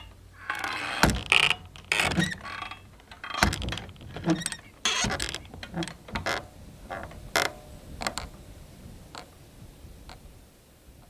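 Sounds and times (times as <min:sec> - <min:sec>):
swinging doors creaking and knocking: 0:00.0 - 0:08.4.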